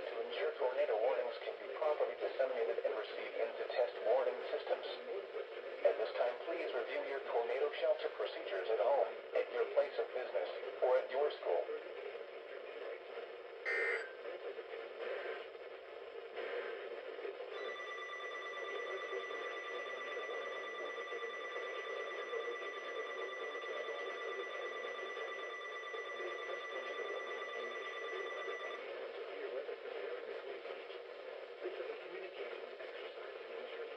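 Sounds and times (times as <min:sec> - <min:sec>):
pulsing electronic alert tone: 0:13.7 - 0:14.1.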